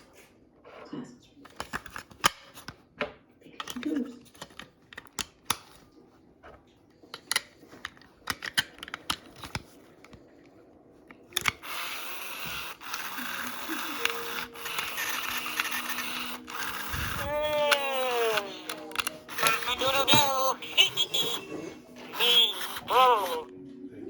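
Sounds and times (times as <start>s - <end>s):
toy packaging crinkling and snapping: 3.6s - 5.9s, 7.1s - 10.4s, 11.1s - 21.4s, 22.0s - 23.5s.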